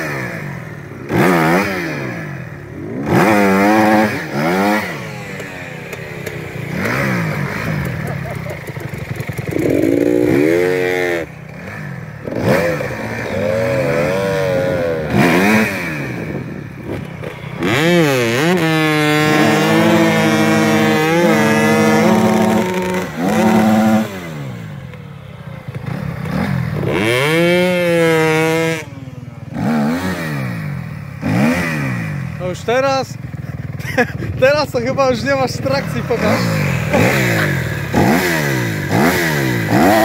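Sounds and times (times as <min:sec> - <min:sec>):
off-road engine revving: 0:00.0 - 0:40.0.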